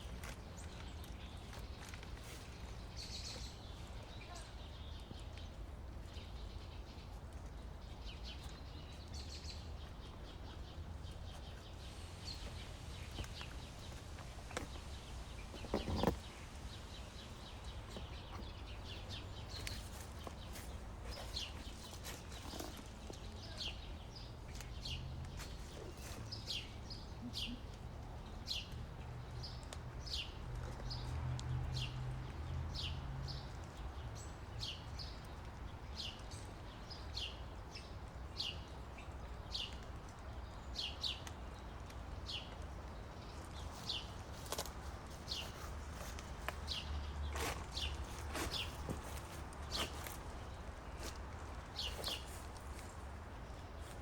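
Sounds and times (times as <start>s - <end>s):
small bird chirping: 8.1s - 25.0s.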